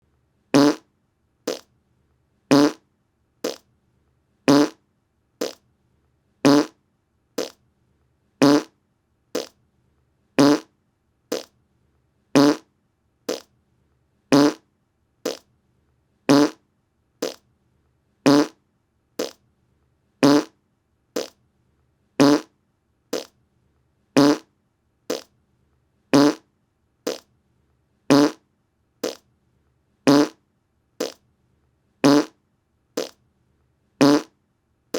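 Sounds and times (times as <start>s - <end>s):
buzzy fart noises: 0.6s - 0.9s, 1.5s - 1.7s, 2.5s - 2.8s, 3.4s - 3.7s, 4.5s - 4.8s, 5.4s - 5.6s, 6.4s - 6.8s, 7.4s - 7.6s, 8.4s - 8.8s, 9.4s - 9.6s, 10.4s - 10.7s, 11.3s - 11.5s, 12.4s - 12.7s, 13.3s - 13.5s, 14.3s - 14.6s, 15.3s - 15.5s, 16.3s - 16.6s, 17.2s - 17.4s, 18.3s - 18.6s, 19.2s - 19.4s, 20.2s - 20.6s, 21.2s - 21.4s, 22.2s - 22.5s, 23.1s - 23.3s, 24.2s - 24.5s, 25.1s - 25.3s, 26.2s - 26.5s, 27.1s - 27.3s, 28.1s - 28.4s, 29.0s - 29.2s, 30.1s - 30.4s, 31.0s - 31.2s, 32.0s - 32.4s, 33.0s - 33.2s, 34.0s - 34.4s.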